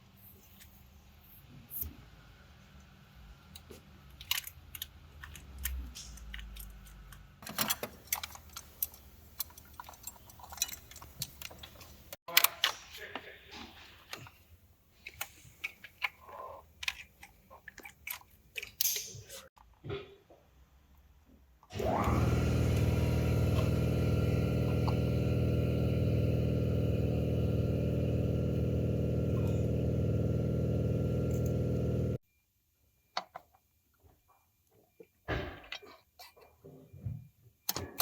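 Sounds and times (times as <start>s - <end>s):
low steady hum: 21.8s - 32.2s.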